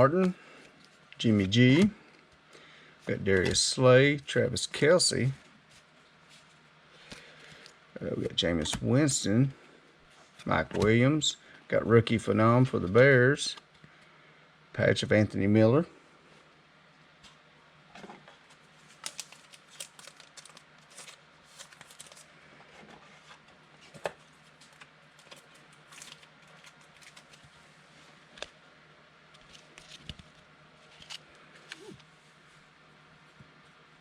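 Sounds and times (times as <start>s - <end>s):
trading cards clicking and rustling: 18.9s - 22.3s, 23.3s - 27.5s.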